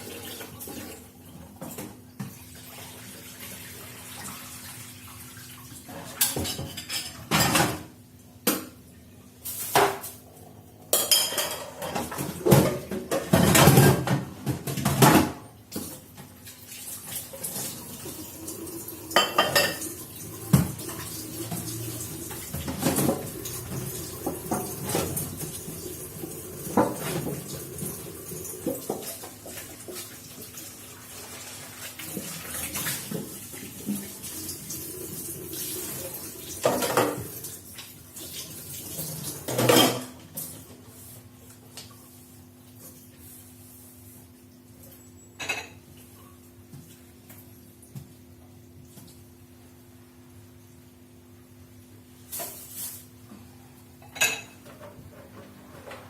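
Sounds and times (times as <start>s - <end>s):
dishes clattering in a sink: 0.0s - 3.0s, 5.8s - 8.8s, 9.5s - 10.2s, 10.8s - 40.8s, 45.4s - 46.9s, 53.4s - 56.0s
tap water running: 0.0s - 43.3s, 54.1s - 56.0s.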